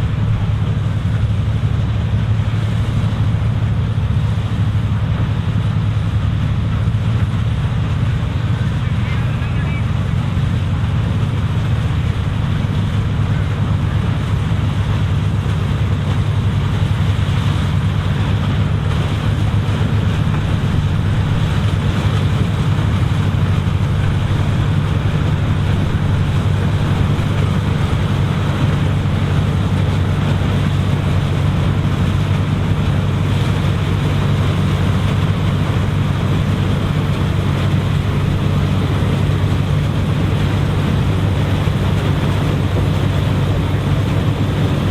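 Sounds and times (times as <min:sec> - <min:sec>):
combine harvester running: 0:00.0 - 0:44.9.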